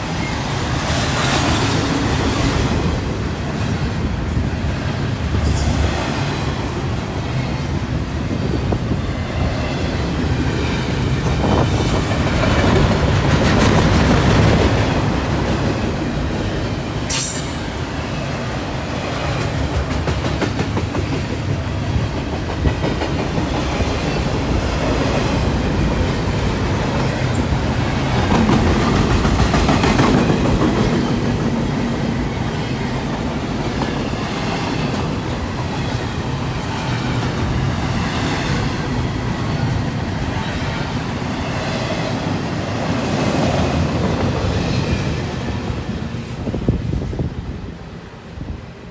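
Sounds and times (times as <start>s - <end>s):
freight train wheels clattering: 0.0s - 46.8s.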